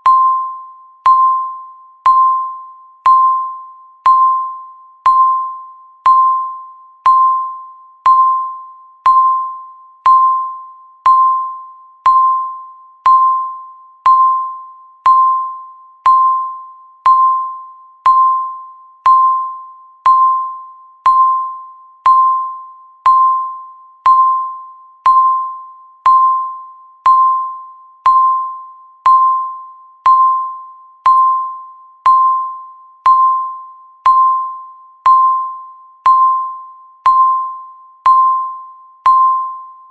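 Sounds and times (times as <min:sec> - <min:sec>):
countdown timer beeping: 0:00.0 - 0:39.9.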